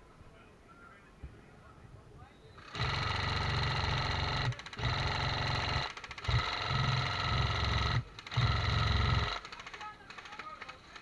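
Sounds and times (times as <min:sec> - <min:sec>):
airsoft gun firing bursts: 0:02.6 - 0:11.0.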